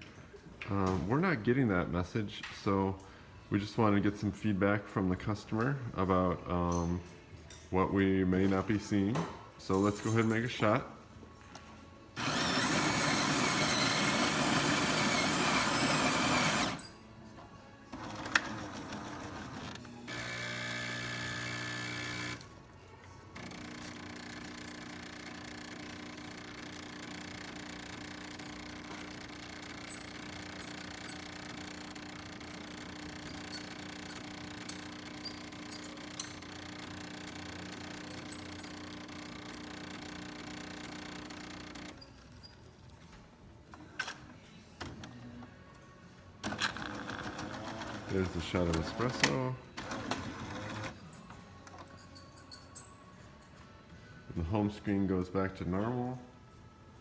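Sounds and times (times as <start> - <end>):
coffee grinder running: 12.2 - 16.8, 18.0 - 22.5, 23.4 - 42.0
espresso machine humming: 12.2 - 16.8, 18.0 - 22.5, 23.4 - 42.0
pump humming: 19.7 - 22.5.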